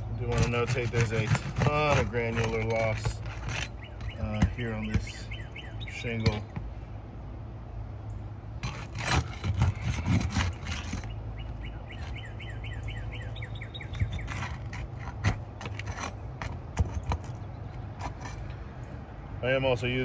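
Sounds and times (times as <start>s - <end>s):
pry tool scraping shingles: 0.0s - 6.6s, 8.6s - 18.6s
bird chirping: 1.4s - 6.8s, 9.6s - 15.2s, 16.8s - 19.0s.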